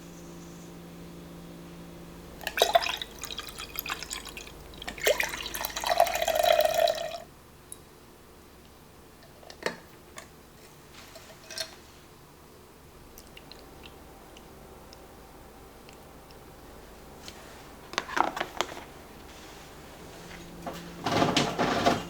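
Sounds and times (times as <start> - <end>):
juicer motor humming: 2.3 - 7.2
liquid dripping and splashing: 13.2 - 14.0.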